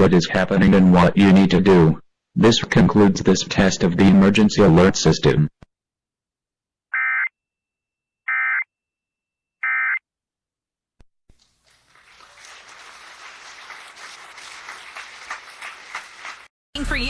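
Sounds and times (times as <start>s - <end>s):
noisy hiss with crackles: 11.3s - 16.4s.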